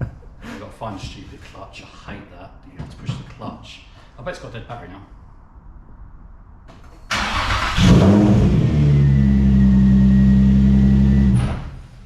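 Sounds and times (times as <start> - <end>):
car engine starting and idling: 7.1 - 12.0.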